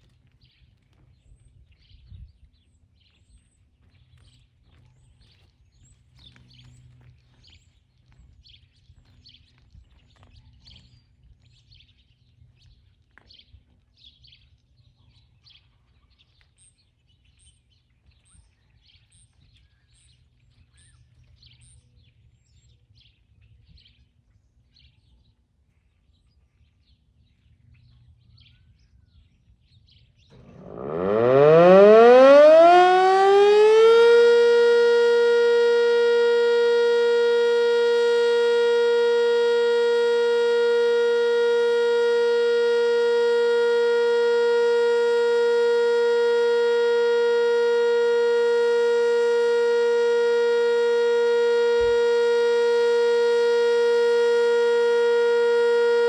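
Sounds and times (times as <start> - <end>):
low steady rumble: 30.3 - 56.0.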